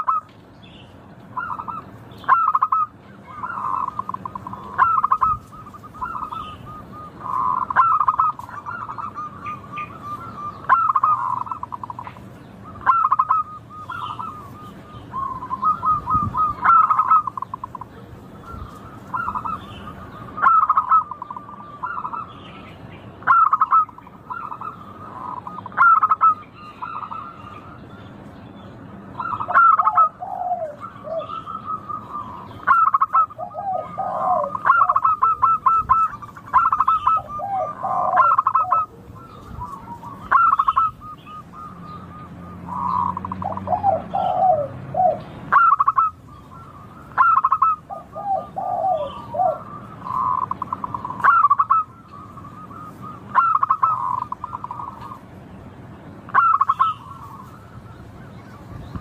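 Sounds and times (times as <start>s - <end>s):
dove cooing: 0.0s - 0.3s, 1.3s - 22.4s, 23.2s - 27.9s, 29.1s - 55.3s, 56.3s - 59.0s.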